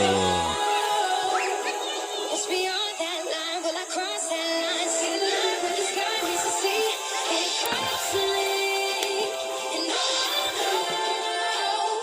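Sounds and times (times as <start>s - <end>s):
background song: 0.0s - 12.0s.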